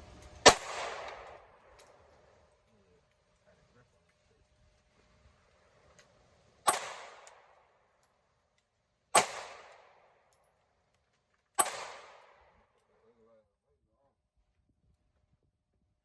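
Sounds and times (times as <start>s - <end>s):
gunshots: 0.4s - 1.7s, 6.6s - 7.6s, 9.2s - 10.1s, 11.6s - 12.5s.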